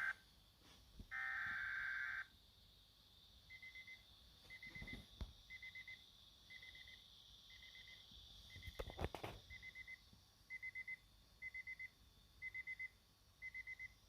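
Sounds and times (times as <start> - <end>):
weather alert radio beeping: 1.1 - 2.3.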